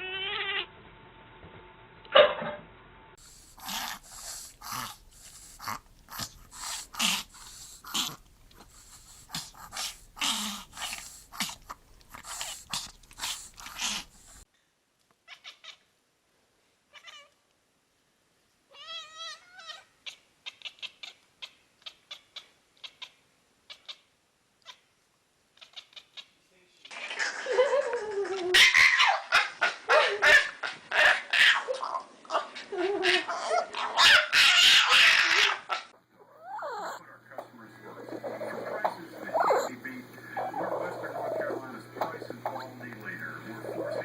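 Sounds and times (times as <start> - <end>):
cat crying: 0.0 - 0.7, 15.3 - 15.9, 16.9 - 17.4, 18.7 - 24.0, 33.0 - 35.7, 36.3 - 37.0.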